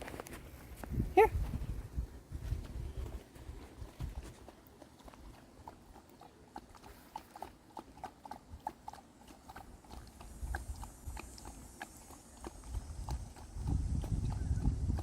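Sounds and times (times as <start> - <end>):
dog lapping water: 3.5 - 15.0.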